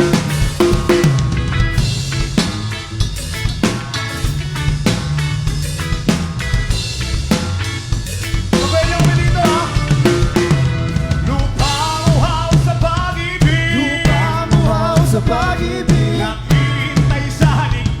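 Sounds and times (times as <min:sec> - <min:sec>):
bass line: 0:00.0 - 0:18.0
drum kit rimshots: 0:00.0 - 0:18.0
reggae band playing: 0:00.0 - 0:18.0
melodic instrument line: 0:08.6 - 0:12.4.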